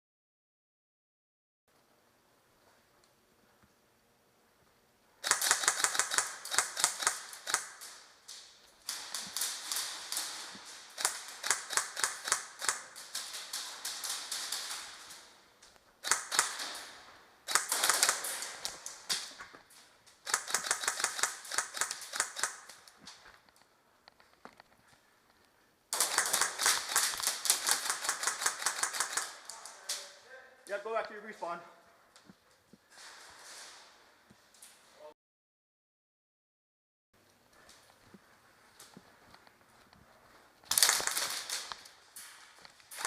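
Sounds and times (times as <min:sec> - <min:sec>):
airsoft guns firing: 0:05.2 - 0:15.3, 0:16.0 - 0:19.4, 0:20.3 - 0:22.9, 0:25.9 - 0:29.6, 0:40.7 - 0:41.8.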